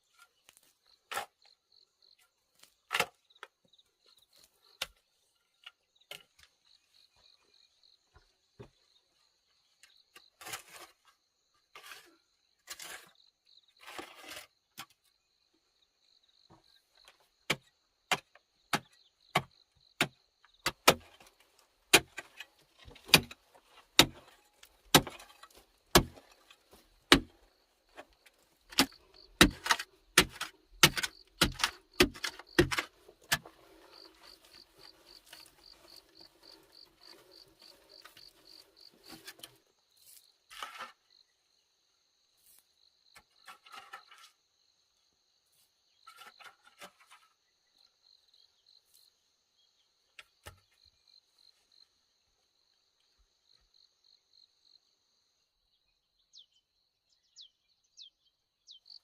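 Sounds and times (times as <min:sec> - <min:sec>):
rough scraping: 0:13.8 - 0:14.6, 0:21.0 - 0:41.1.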